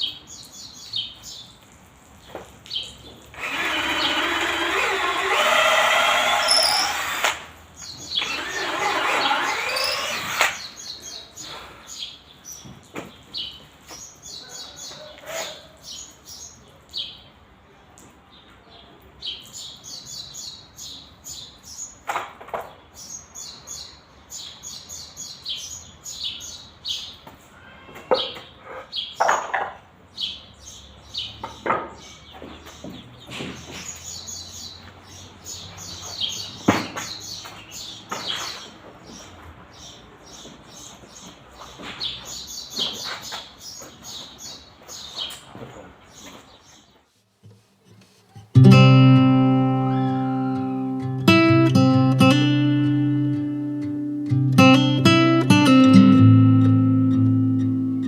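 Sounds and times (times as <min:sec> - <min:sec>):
small birds chirping: 0:00.0 - 0:27.4, 0:30.0 - 0:58.0
power tool running: 0:03.4 - 0:07.5, 0:08.1 - 0:10.7.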